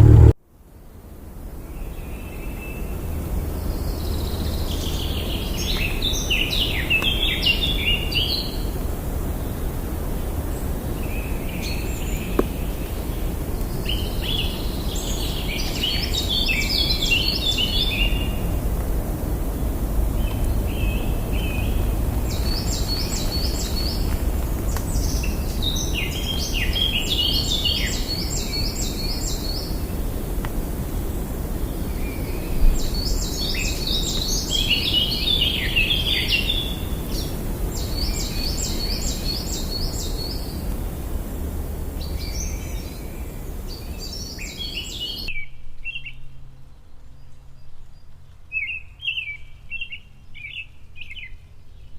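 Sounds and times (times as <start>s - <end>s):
low background rumble: 0.0s - 0.4s, 2.6s - 45.4s
short thump: 0.0s - 0.4s.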